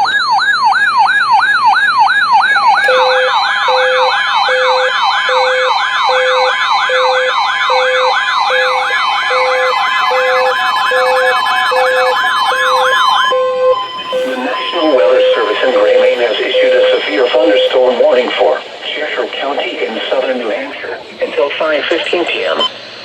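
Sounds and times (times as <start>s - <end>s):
falling electronic yelp tone: 2.8s - 18.4s
faster electronic yelp tone: 8.5s - 17.8s
short low beep: 12.7s - 17.8s.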